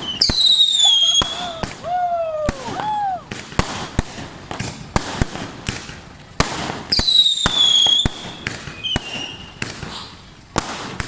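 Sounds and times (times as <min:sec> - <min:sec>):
fireworks bangs and cracks: 0:00.0 - 0:11.0
whistling firework: 0:00.0 - 0:11.0.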